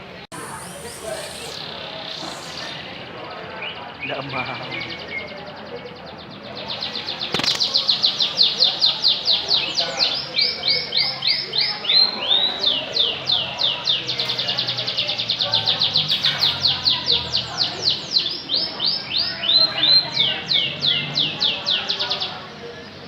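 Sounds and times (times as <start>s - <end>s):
canary singing: 0.3s - 5.4s.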